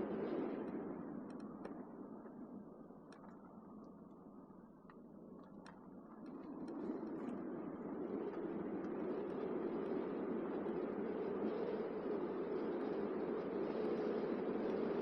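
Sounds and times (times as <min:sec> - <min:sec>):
faint ticks: 0:00.6 - 0:07.5.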